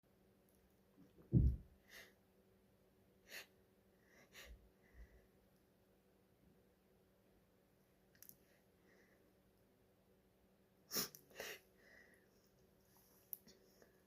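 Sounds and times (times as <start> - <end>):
breath thump on microphone: 1.3 - 1.7.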